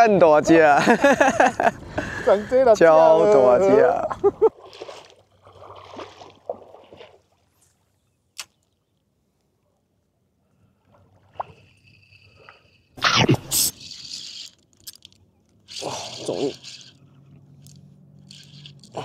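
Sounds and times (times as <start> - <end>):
water splashing: 4.2 - 8.8.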